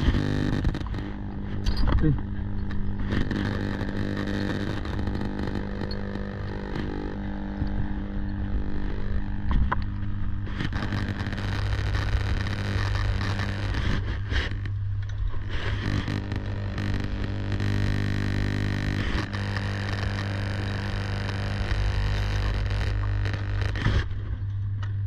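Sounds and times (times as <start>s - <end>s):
substation equipment humming: 0.0s - 25.0s.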